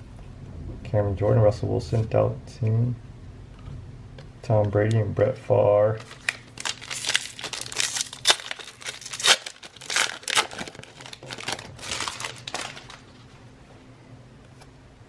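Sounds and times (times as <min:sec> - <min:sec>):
wrapper tearing and crinkling: 0:06.0 - 0:13.4.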